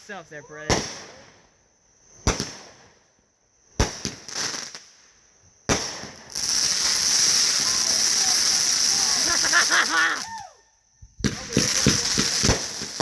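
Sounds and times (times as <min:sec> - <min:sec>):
firework bangs: 0:00.0 - 0:01.5, 0:02.1 - 0:03.0, 0:03.7 - 0:05.0, 0:05.6 - 0:10.4, 0:11.2 - 0:13.0
loud steady hiss: 0:00.0 - 0:13.0
small firework pops: 0:00.6 - 0:01.5, 0:02.2 - 0:03.0, 0:03.7 - 0:09.4, 0:11.2 - 0:13.0.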